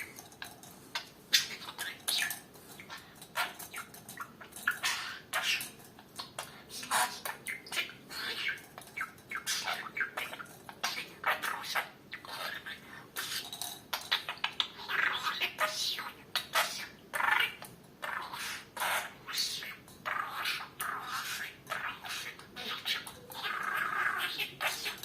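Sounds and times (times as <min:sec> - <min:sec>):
toy clicks and clatter: 0:00.0 - 0:07.9.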